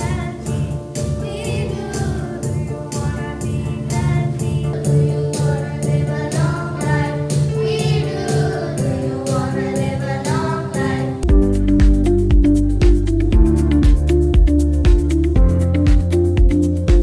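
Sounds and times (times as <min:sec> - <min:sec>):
song with singing voices: 0:00.0 - 0:17.0
steady beat: 0:11.2 - 0:17.0.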